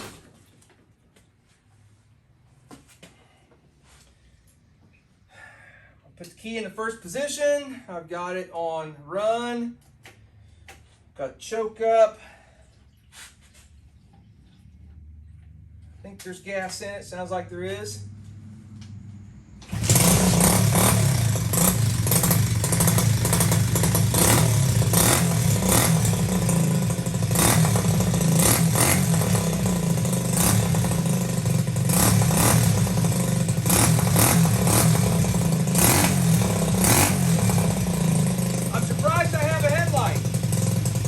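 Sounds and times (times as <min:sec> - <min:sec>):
small motorcycle engine running: 0:19.6 - 0:41.0.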